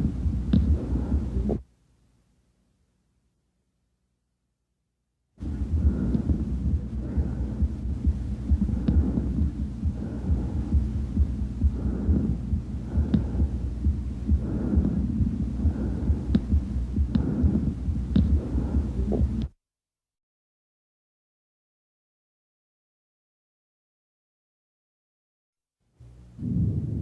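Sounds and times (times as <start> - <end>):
breath sounds through stethoscope: 0.0 - 1.6, 5.4 - 19.5, 26.4 - 27.0
heartbeat thumps: 0.0 - 1.6, 5.4 - 19.6, 26.4 - 27.0.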